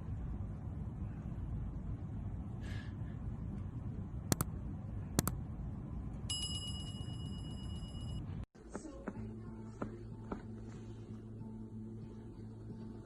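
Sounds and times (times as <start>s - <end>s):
steady low hum: 0.0s - 8.5s
bell-like ringing trill: 6.3s - 8.3s.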